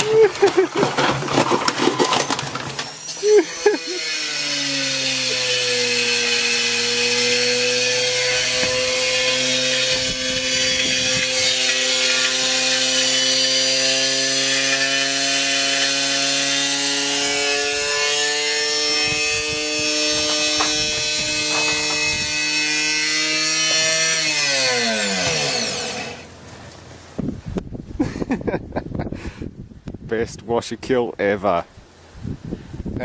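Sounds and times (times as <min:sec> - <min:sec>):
brick grinding in drum: 0:00.0 - 0:03.0, 0:19.2 - 0:24.2.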